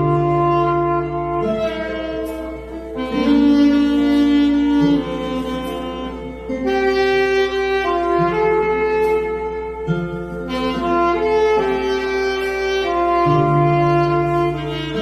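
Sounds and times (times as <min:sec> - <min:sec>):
saxophone playing slow ballad: 0:00.0 - 0:15.0.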